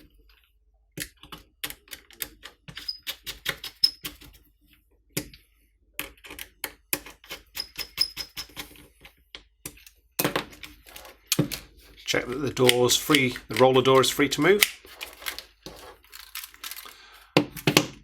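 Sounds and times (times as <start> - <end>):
screws being tightened clicking: 6.3 - 8.7, 10.9 - 17.0.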